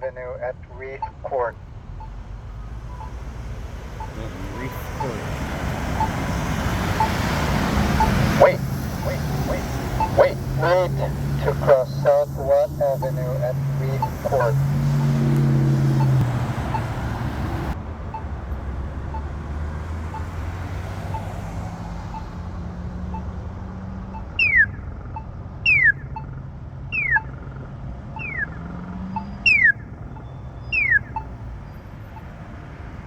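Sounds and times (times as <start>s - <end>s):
road traffic passing: 0.0s - 33.0s
push button locator tone ticking: 4.0s - 16.9s, 22.1s - 22.4s, 24.1s - 31.4s
loud falling chirps: 24.2s - 26.3s, 27.0s - 27.4s, 28.2s - 31.4s.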